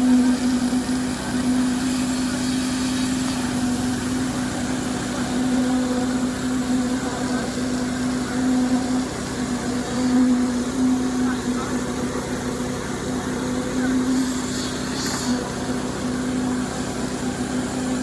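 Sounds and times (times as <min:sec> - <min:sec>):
engine running steadily: 0:00.0 - 0:18.0.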